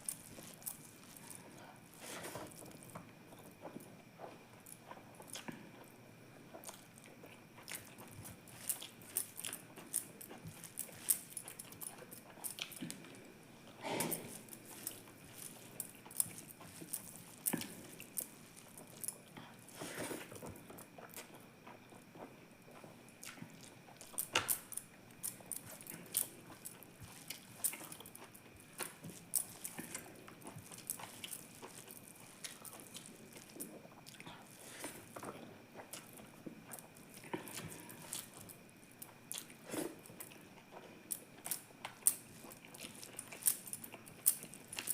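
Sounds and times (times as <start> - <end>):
person chewing: 0.0 - 5.9, 6.5 - 44.9.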